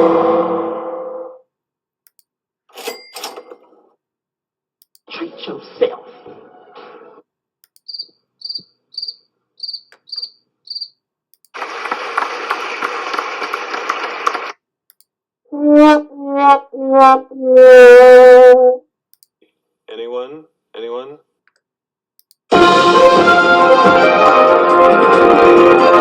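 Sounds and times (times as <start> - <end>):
sad trombone falling notes: 0.0 - 1.4, 15.5 - 18.8
cricket chirps sound effect: 7.8 - 11.0.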